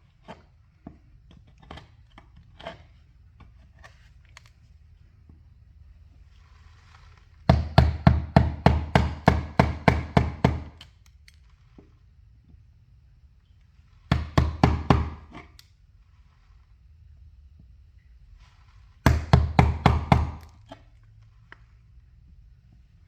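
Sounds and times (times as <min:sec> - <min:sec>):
hammer striking chisel: 0:07.5 - 0:10.8, 0:14.1 - 0:15.5, 0:19.0 - 0:20.5.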